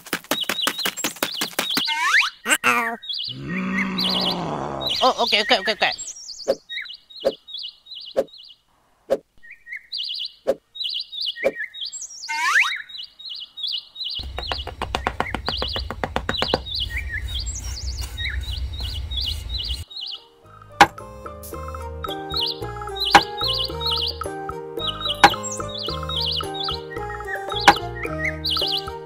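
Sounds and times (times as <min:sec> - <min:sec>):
birds chirping: 0:00.0 - 0:08.7, 0:09.4 - 0:29.0
sharp knocks: 0:14.2 - 0:17.4, 0:25.2 - 0:25.4
low steady hum: 0:14.2 - 0:19.8.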